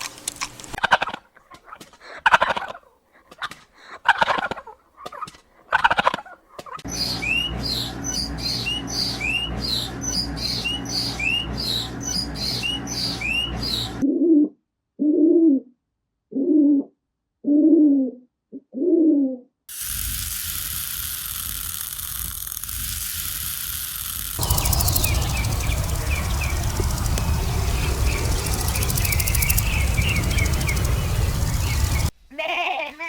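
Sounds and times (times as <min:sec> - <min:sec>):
bird whistling upward sweeps: 0:06.9 - 0:14.0, 0:24.4 - 0:32.1.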